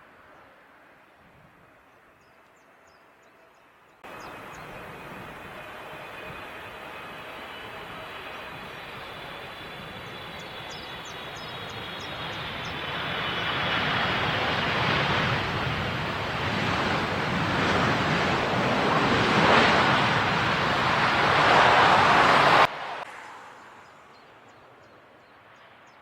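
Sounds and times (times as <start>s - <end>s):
jet airliner engine noise: 4.0s - 23.9s.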